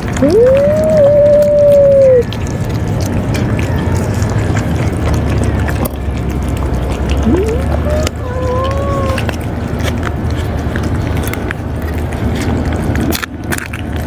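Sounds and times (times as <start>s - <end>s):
steady low rumble: 0.0s - 14.0s
cat meowing: 0.2s - 2.3s, 7.2s - 9.4s.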